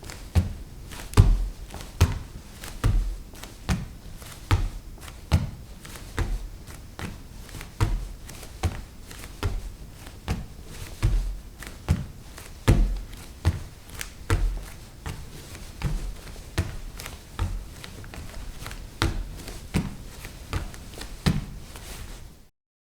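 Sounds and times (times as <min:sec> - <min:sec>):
bare footsteps on wooden floor: 0:00.0 - 0:22.4.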